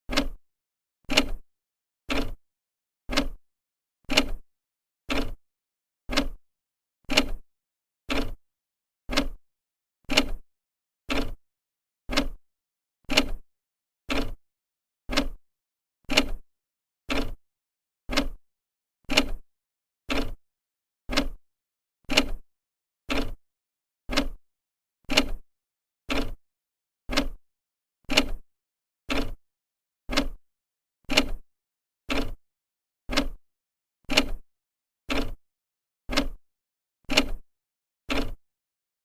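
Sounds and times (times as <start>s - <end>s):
clock ticking: 0.1s - 0.4s, 3.1s - 3.4s, 6.1s - 6.4s, 9.1s - 9.4s, 12.1s - 12.4s, 15.1s - 15.4s, 18.1s - 18.4s, 21.1s - 21.4s, 24.1s - 24.4s, 27.1s - 27.4s, 30.1s - 30.4s, 32.1s - 32.4s, 33.1s - 33.4s, 35.1s - 35.4s, 36.1s - 36.4s, 38.1s - 38.4s.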